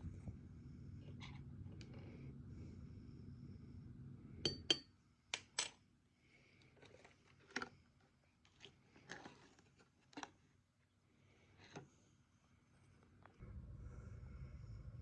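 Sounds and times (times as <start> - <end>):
low steady hum: 0.0 - 5.4, 12.4 - 15.0.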